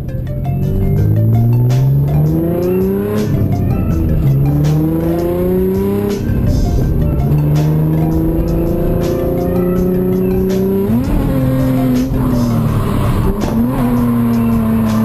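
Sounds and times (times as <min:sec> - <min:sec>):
car engine at high revs: 0:00.0 - 0:15.0.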